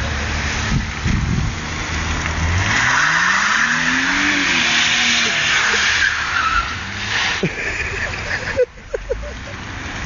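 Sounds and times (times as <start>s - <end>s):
car engine revving: 0.0s - 10.0s
tyre screech: 2.8s - 7.4s.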